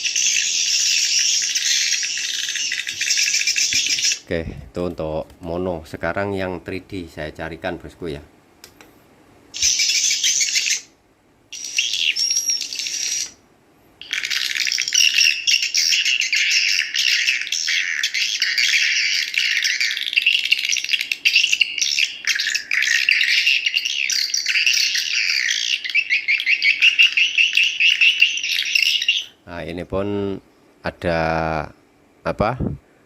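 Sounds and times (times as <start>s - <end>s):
swiftlet calls twittering: 0.0s - 4.3s, 9.5s - 10.9s, 11.5s - 13.4s, 14.0s - 29.4s.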